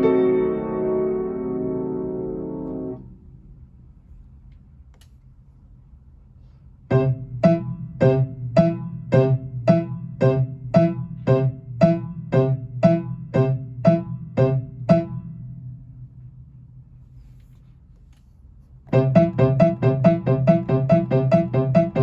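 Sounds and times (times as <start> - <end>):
piano note struck repeatedly: 0.0 - 3.1, 6.9 - 16.2, 18.9 - 22.0.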